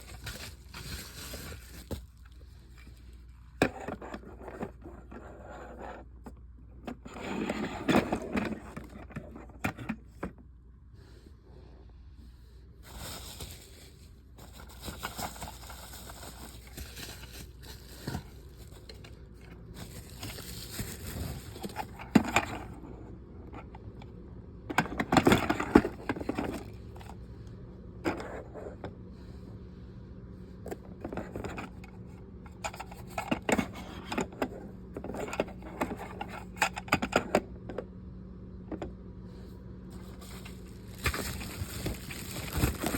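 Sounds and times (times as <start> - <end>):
toy parts and packaging handled: 0.0 - 10.5, 12.8 - 27.3, 30.6 - 37.8, 38.7 - 42.9
faint steady hum: 0.0 - 42.9.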